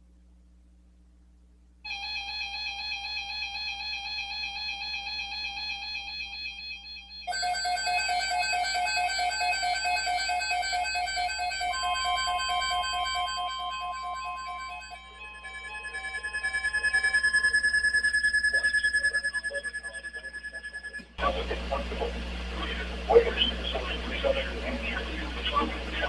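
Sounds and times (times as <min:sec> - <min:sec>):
warbling electronic alert data tones: 0:10.7 - 0:26.0.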